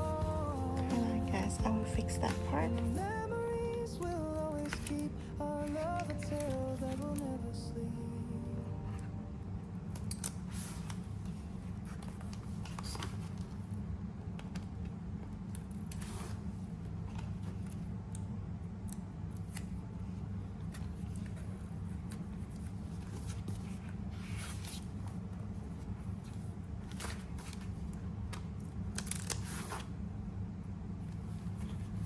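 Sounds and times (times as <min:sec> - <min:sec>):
scissors snipping paper: 0:00.0 - 0:03.1, 0:27.0 - 0:29.9
paper rustling: 0:00.0 - 0:07.3, 0:10.0 - 0:13.8, 0:15.6 - 0:17.9, 0:19.4 - 0:30.0, 0:31.1 - 0:32.0
low hum: 0:00.0 - 0:12.4.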